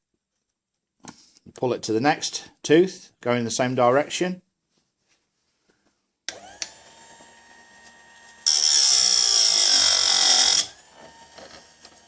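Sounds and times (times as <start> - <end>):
electric motor whining: 6.3 - 12.0.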